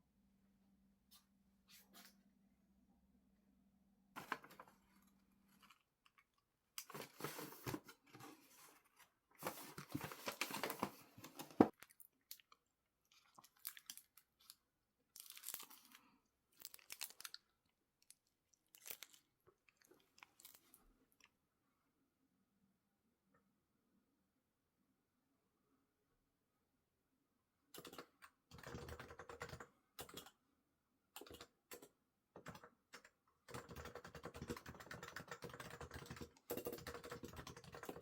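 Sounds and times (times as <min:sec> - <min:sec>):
close-up crunching and crinkling: 0:11.7 - 0:21.4.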